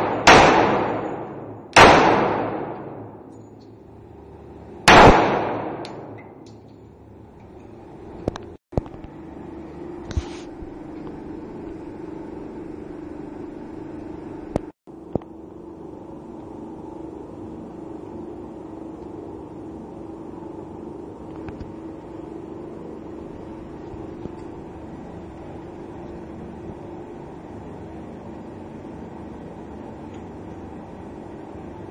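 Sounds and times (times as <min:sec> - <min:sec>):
sharp bangs: 0:00.0 - 0:03.3, 0:04.9 - 0:06.4
low mechanical hum: 0:00.0 - 0:31.9.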